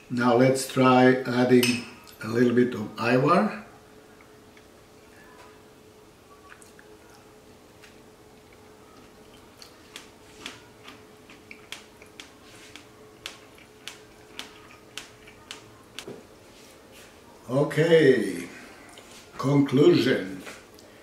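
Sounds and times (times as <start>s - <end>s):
faint steady hum: 0.0s - 21.0s
chewing mouth clicks: 9.2s - 15.6s.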